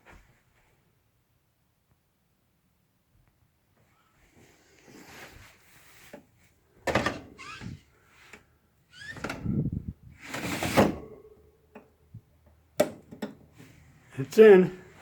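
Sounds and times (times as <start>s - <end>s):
metal chassis scraping and sliding: 9.0s - 11.2s.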